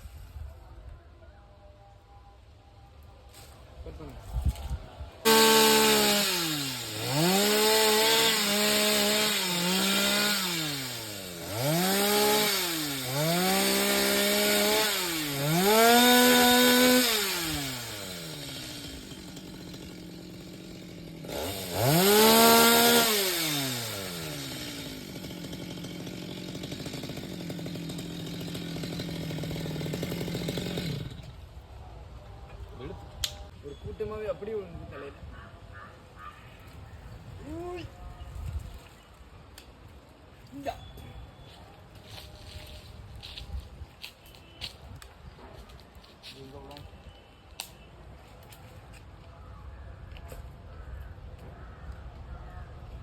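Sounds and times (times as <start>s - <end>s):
chainsaw revving: 5.2s - 31.4s.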